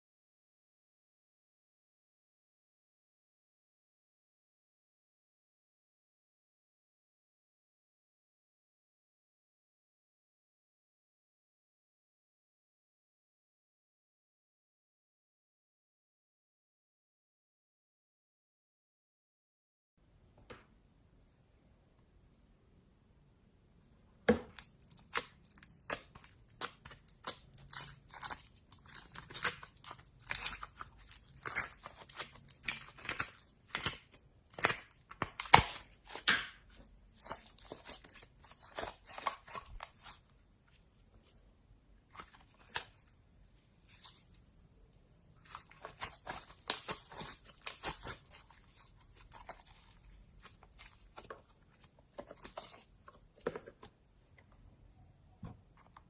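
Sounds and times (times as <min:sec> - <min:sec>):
slime crackling and popping: 0:24.5 - 0:36.3, 0:45.4 - 0:51.3.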